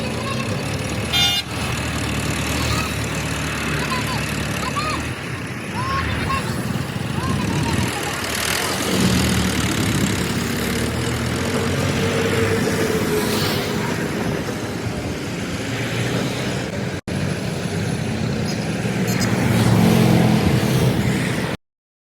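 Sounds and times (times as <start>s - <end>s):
vehicle engine running: 0.0s - 12.6s.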